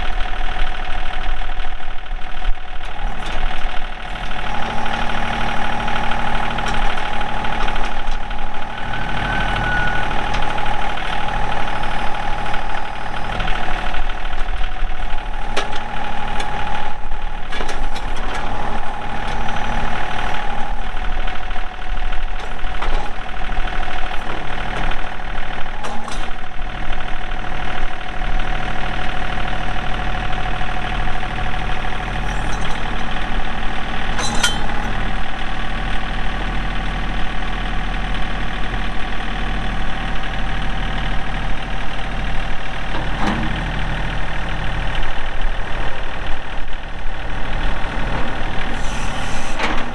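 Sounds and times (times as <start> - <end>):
tractor diesel engine running: 0.0 - 49.9
short clunks: 32.2 - 35.0, 48.1 - 49.9.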